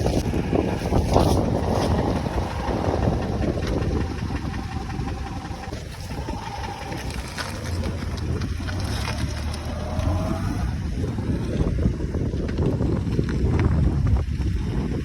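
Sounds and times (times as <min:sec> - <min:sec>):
engine knocking: 0:00.0 - 0:11.3
car engine running: 0:00.0 - 0:12.2.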